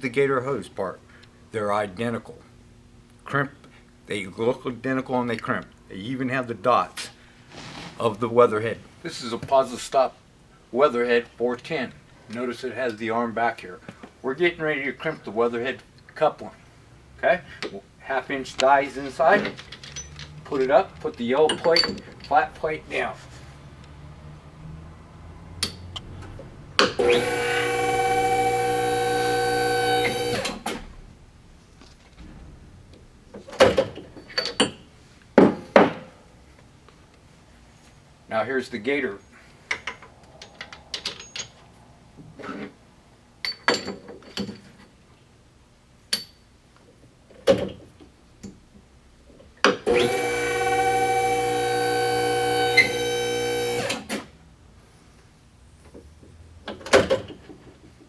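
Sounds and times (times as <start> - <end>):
hydraulic pump running: 25.6 - 30.9, 49.8 - 54.2.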